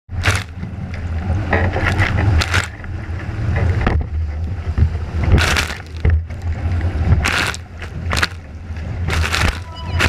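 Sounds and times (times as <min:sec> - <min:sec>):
water spray splashing: 0:00.1 - 0:00.6, 0:05.4 - 0:06.0, 0:07.2 - 0:08.4, 0:09.0 - 0:10.0.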